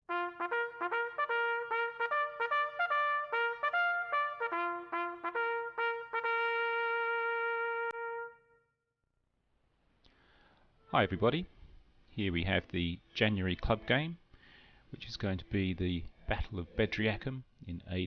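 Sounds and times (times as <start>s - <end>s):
trumpet-like brass notes: 0.1s - 8.8s.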